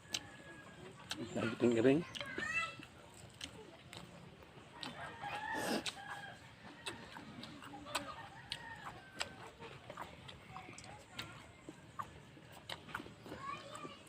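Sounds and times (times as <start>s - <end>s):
chickens clucking faintly: 0.0s - 14.0s.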